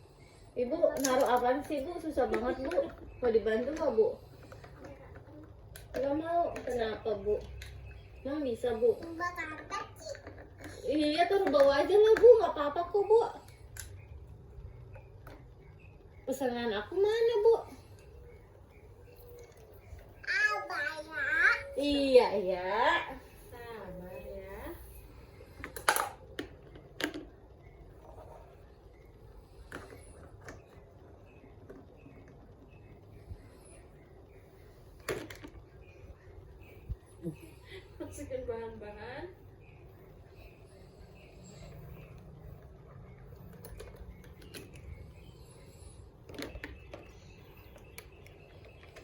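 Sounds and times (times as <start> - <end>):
plastic toys clicking and tapping: 0.8 - 8.0, 9.0 - 15.7, 25.4 - 28.4, 42.1 - 45.1, 46.1 - 49.0.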